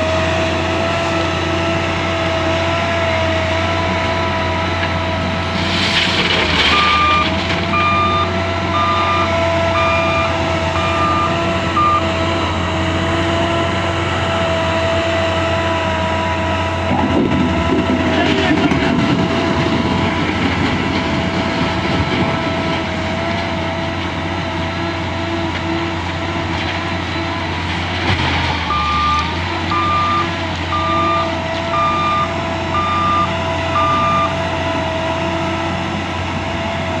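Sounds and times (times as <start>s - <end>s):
diesel engine whining: 0.0s - 37.0s
reversing alarm beeps: 6.2s - 12.6s, 28.6s - 34.4s.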